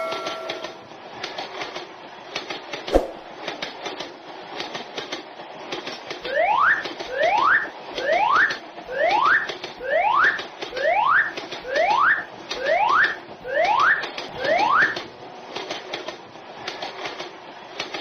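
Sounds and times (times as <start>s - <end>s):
train rattling clatter: 0.0s - 7.1s.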